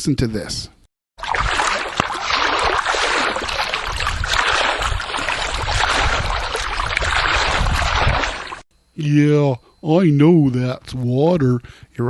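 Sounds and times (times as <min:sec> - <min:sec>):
water sloshing and splashing: 0:01.2 - 0:08.6.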